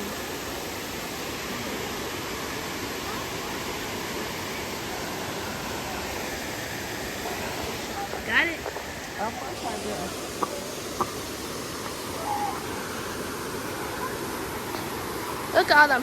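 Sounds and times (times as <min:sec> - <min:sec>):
waterfall rushing: 0:00.0 - 0:16.0.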